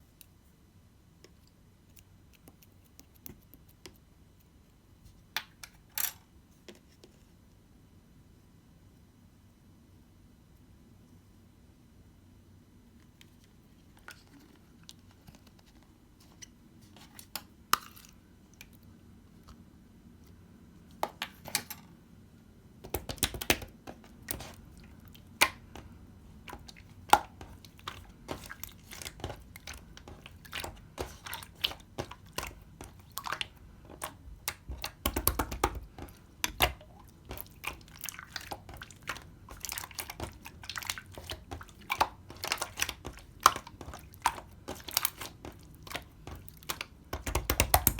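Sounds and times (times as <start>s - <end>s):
slime squishing and popping: 22.9s - 47.9s.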